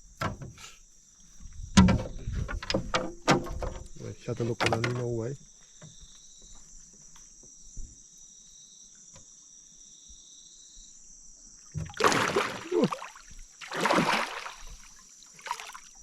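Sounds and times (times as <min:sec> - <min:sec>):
insects droning: 0:00.0 - 0:16.0
water splashing: 0:11.8 - 0:16.0.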